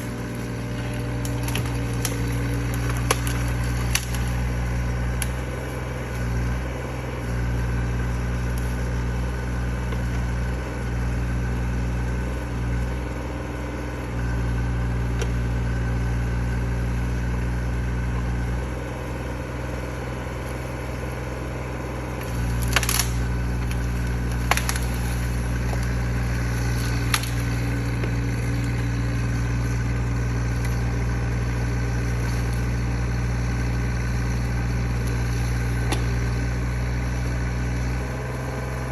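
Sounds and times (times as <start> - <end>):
sharp cracks: 0.0 - 5.4, 22.2 - 29.0
excavator engine running: 0.0 - 38.9.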